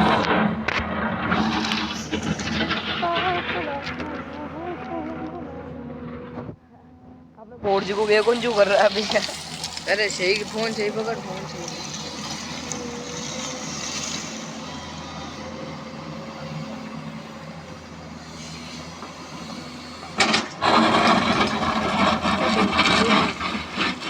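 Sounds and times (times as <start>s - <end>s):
loud rough clattering: 0.0s - 4.4s, 20.0s - 24.0s
diesel engine running: 0.0s - 24.0s.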